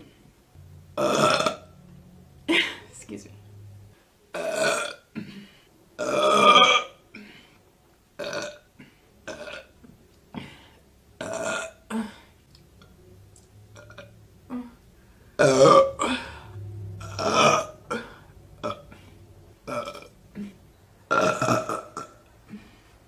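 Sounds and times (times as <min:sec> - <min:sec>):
woman burping: 0:01.0 - 0:01.7, 0:02.5 - 0:03.0, 0:04.3 - 0:07.4, 0:08.2 - 0:10.6, 0:11.2 - 0:12.3, 0:13.8 - 0:14.8, 0:15.4 - 0:19.1, 0:19.7 - 0:22.7.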